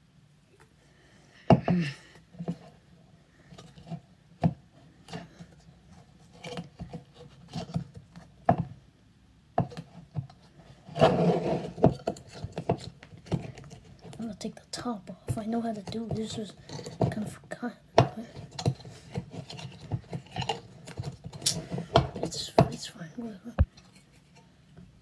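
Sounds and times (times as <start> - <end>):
scraping rub: 10.5 - 14.2, 18.3 - 22.5.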